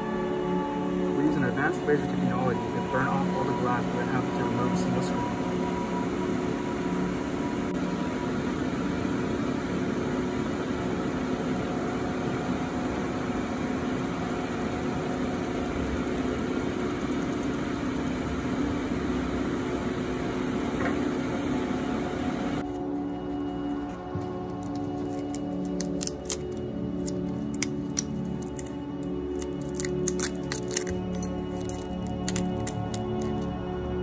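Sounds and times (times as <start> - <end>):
machine humming: 0.0 - 22.7.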